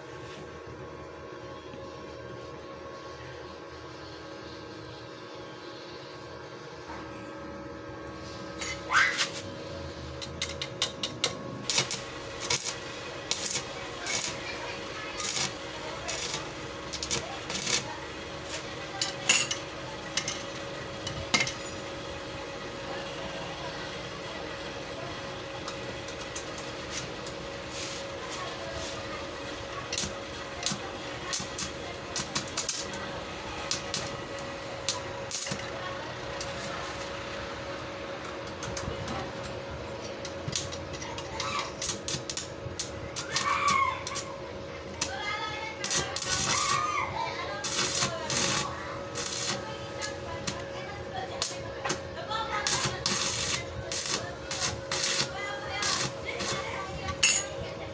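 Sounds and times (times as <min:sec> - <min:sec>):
hand tools clinking on metal: 0:57.2 - 0:57.6.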